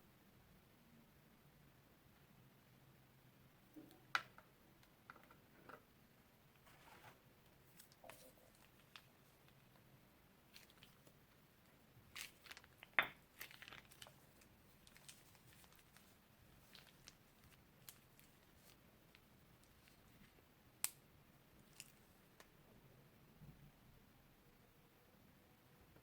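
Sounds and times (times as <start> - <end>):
slime and plastic bags crackling: 6.6 - 21.0, 21.6 - 22.5.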